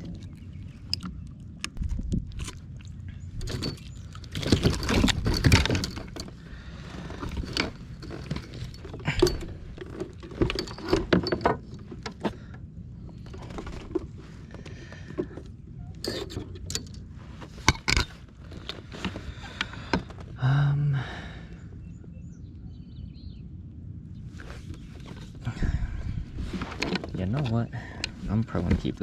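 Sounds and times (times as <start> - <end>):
metal jingling: 3.2 - 12.1.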